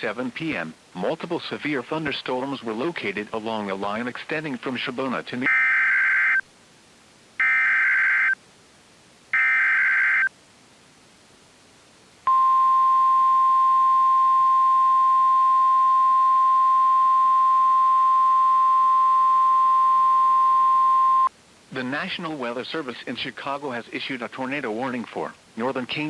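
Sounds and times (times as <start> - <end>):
steady shrill alarm tone: 7.4 - 8.4, 9.4 - 10.3
buzzy data bursts: 9.4 - 10.3.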